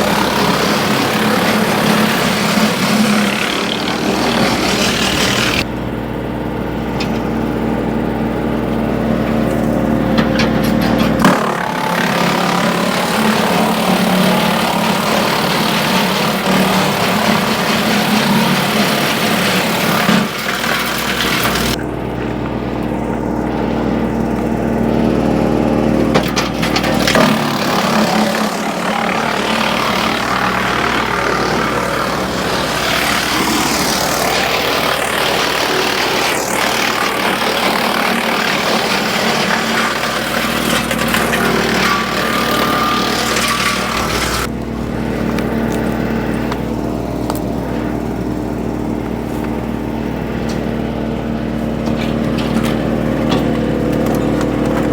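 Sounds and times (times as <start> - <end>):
wood chipper running: 0.0 - 54.9
branches cracking and snapping: 11.2 - 21.8, 40.7 - 47.8.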